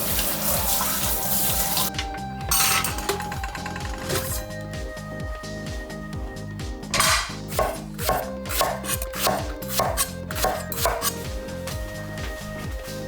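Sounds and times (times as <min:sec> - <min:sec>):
background music with steady beat: 0:00.0 - 0:13.0
knife chopping on cutting board: 0:07.0 - 0:11.3.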